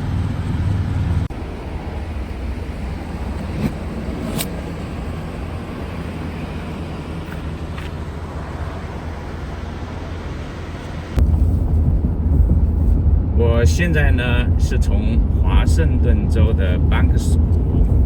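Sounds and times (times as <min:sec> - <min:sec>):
loud low rumble: 0:00.0 - 0:18.0
moving vehicle running noise: 0:00.0 - 0:18.0.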